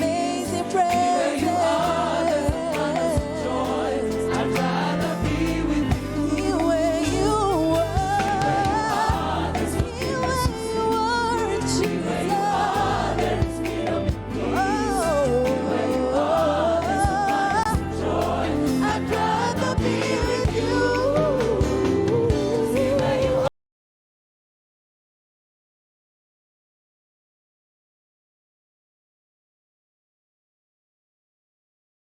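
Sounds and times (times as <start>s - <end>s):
choir singing: 0.0s - 23.5s
drums with steady beat: 0.0s - 23.5s
keyboard: 0.0s - 23.5s
lead singer melismatic vocals: 0.0s - 23.5s.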